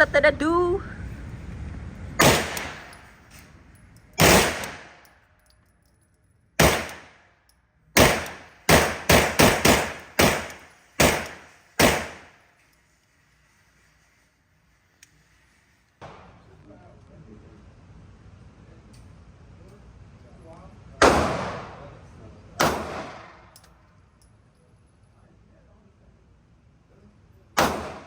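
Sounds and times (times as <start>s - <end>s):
gunshots with echoing tail: 2.2s - 2.9s, 4.2s - 5.0s, 6.6s - 7.2s, 8.0s - 12.3s, 21.0s - 21.8s, 22.6s - 23.4s, 27.6s - 28.0s.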